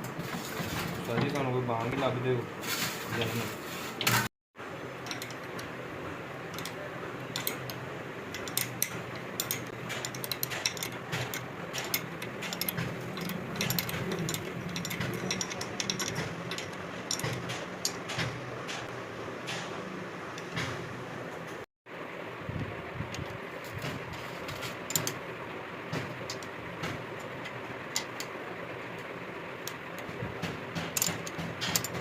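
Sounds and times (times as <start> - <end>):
hand tools clinking on metal: 6.5 - 18.2, 30.8 - 32.0.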